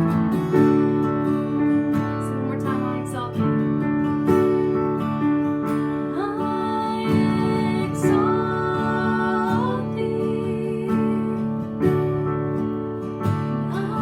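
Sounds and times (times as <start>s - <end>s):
acoustic guitar: 0.0s - 14.0s
worship song: 6.2s - 11.5s
person singing: 6.2s - 11.6s, 13.7s - 14.0s.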